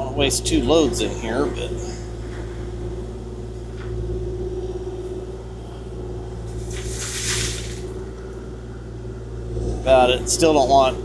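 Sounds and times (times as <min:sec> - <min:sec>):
excavator diesel engine droning: 0:00.0 - 0:11.0
brief hissing rush: 0:06.7 - 0:07.8.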